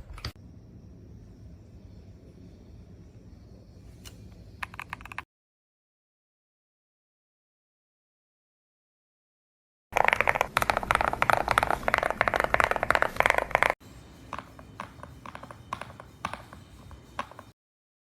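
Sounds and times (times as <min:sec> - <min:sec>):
mechanical keyboard typing: 0:04.6 - 0:05.2, 0:10.0 - 0:13.8.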